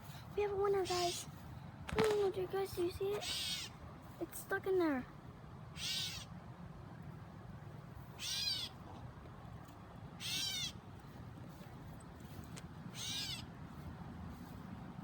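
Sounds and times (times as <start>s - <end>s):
fledgling bird calling: 3.1s - 3.8s, 5.7s - 6.4s, 8.1s - 8.8s, 10.2s - 10.9s, 12.9s - 13.6s.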